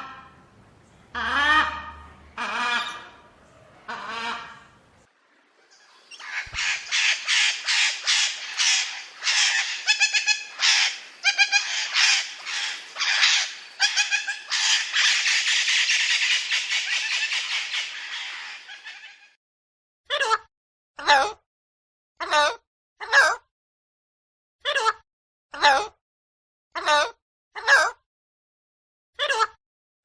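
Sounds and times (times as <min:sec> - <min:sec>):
parrot squawking: 0:01.1 - 0:03.3, 0:05.7 - 0:19.4.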